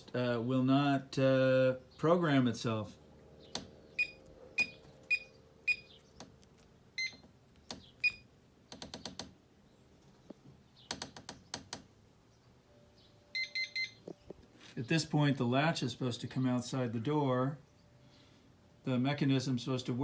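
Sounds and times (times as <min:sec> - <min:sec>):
keypad beeps: 0:04.0 - 0:05.9, 0:07.0 - 0:07.3, 0:08.0 - 0:08.3, 0:13.3 - 0:14.2.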